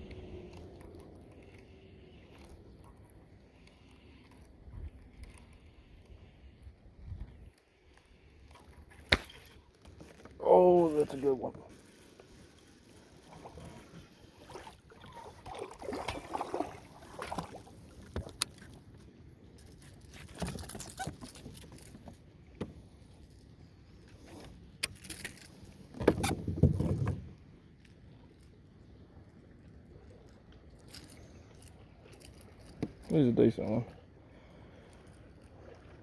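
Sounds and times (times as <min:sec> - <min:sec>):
knocks and clicks in a kayak: 0:00.0 - 0:10.4, 0:17.2 - 0:23.0, 0:24.2 - 0:27.6, 0:32.6 - 0:34.0.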